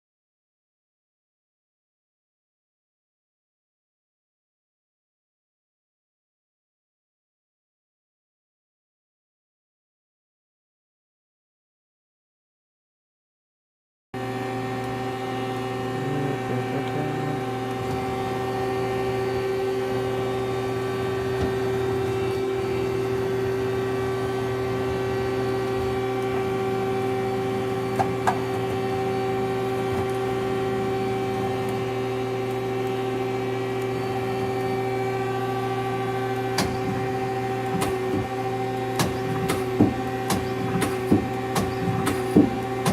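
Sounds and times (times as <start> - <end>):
lathe humming with steady tones: 14.2 - 42.9.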